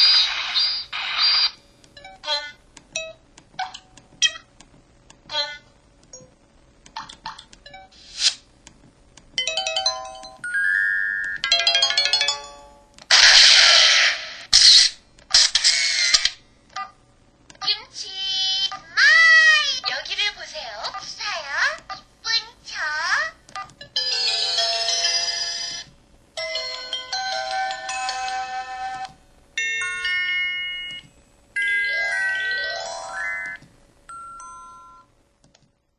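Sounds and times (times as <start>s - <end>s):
hissy sound effects: 8.0s - 8.5s
phone ringtone melodies: 9.4s - 12.9s, 24.0s - 25.8s, 26.4s - 35.1s.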